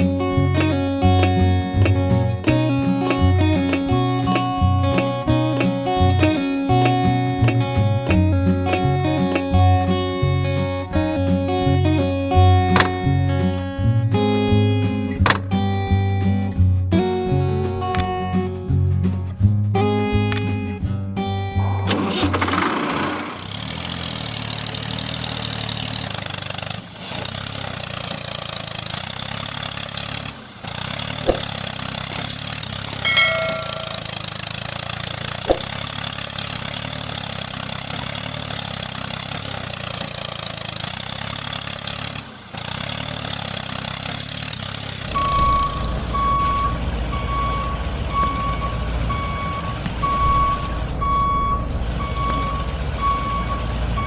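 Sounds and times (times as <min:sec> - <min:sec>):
truck engine rumble: 0:00.0 - 0:54.0
vehicle engine running: 0:00.0 - 0:54.0
reversing beeper: 0:33.1 - 0:34.3, 0:45.0 - 0:54.0.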